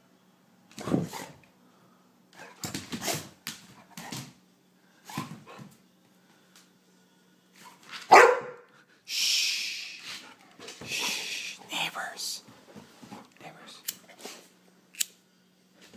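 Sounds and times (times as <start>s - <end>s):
puppy barking: 8.1s - 8.7s.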